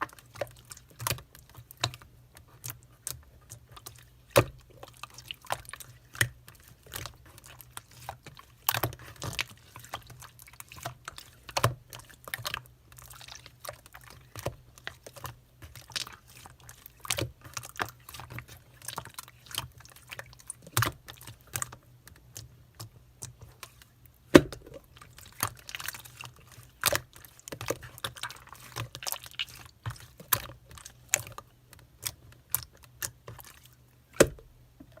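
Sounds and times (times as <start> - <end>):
slime squelching and popping: 0.0 - 35.0.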